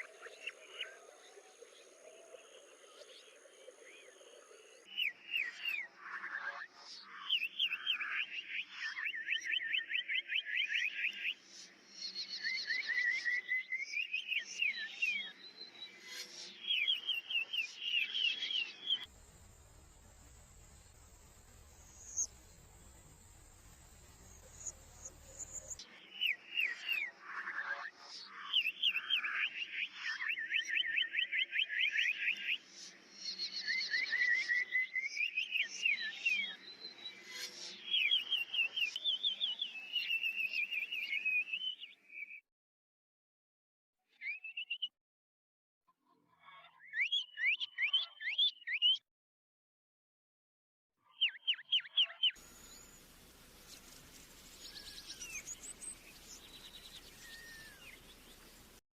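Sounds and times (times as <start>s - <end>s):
songbird chirping: 7.0s - 42.4s, 51.0s - 58.8s
recording hiss: 19.1s - 25.8s, 52.4s - 58.8s
songbird swooping notes: 19.2s - 25.8s.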